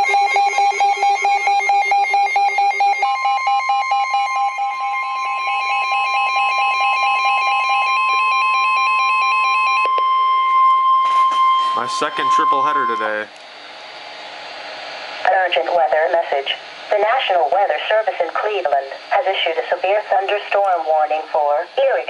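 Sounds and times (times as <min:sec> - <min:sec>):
rapidly pulsing electronic alarm: 0:00.0 - 0:14.8
steady warning alarm tone: 0:00.0 - 0:22.0.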